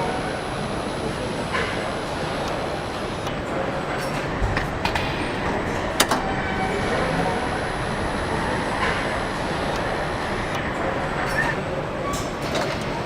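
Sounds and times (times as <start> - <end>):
sharp click: 4.8 - 6.8.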